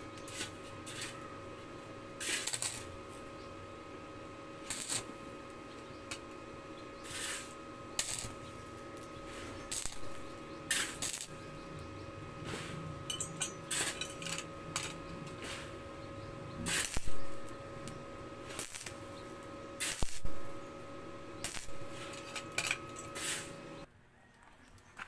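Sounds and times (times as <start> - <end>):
steady mechanical hum: 0.0 - 25.0
short hissing bursts: 7.0 - 8.4, 9.2 - 11.3, 16.6 - 17.3, 19.8 - 20.4, 23.1 - 23.6
sharp metallic clinks: 13.1 - 15.0.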